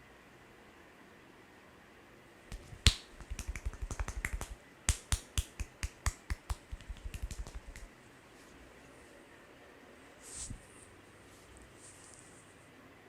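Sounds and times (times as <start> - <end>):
hand taps and snaps: 2.5 - 7.9.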